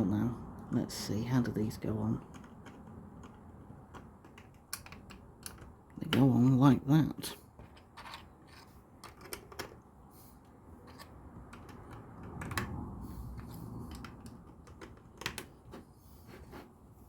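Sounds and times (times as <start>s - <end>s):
plastic pieces clicking together: 2.2s - 6.2s
rustle of handling: 7.4s - 11.2s.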